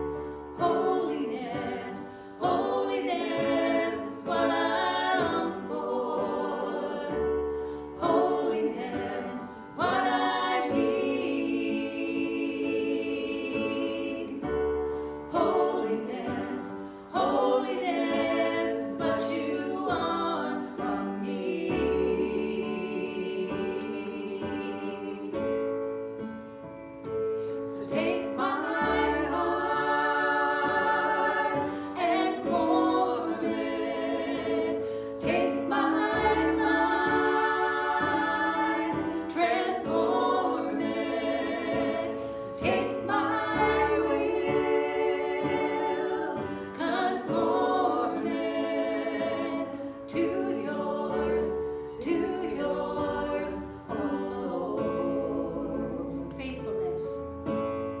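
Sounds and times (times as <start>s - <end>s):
voices singing gospel song: 0.0s - 25.8s, 27.3s - 58.0s.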